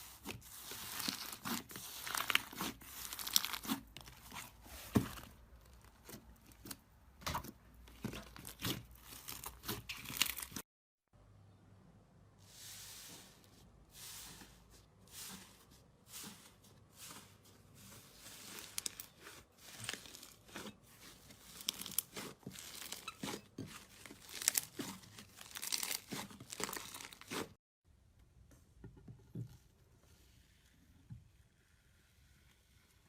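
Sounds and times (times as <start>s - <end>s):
slime squishing crackly: 0.2s - 6.8s, 7.9s - 10.6s, 18.2s - 27.6s.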